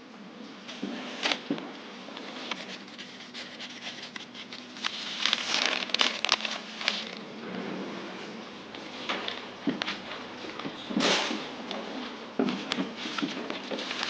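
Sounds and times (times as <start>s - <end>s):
paper rustling: 2.3s - 7.2s, 12.5s - 14.0s.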